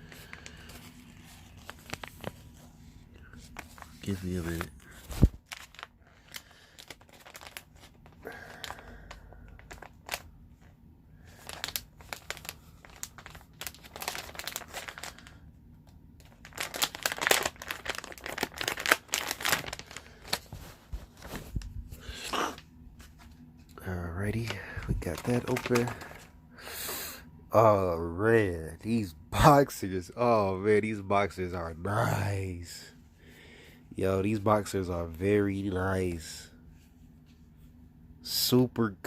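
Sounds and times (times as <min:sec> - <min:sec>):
packaging crinkling and tearing: 0:00.0 - 0:02.6, 0:03.2 - 0:10.6, 0:11.2 - 0:15.4, 0:16.2 - 0:22.6, 0:24.2 - 0:26.3.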